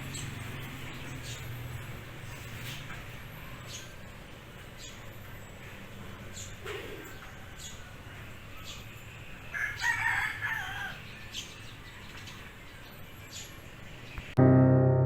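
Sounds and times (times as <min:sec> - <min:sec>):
rooster crowing: 0:09.5 - 0:11.0
piano music: 0:14.4 - 0:15.0.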